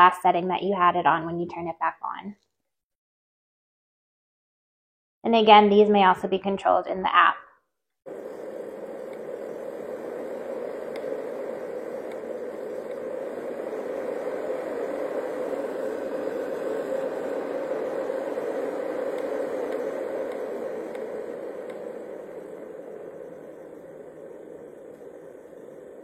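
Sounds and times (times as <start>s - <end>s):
white noise machine rushing: 8.1s - 26.0s.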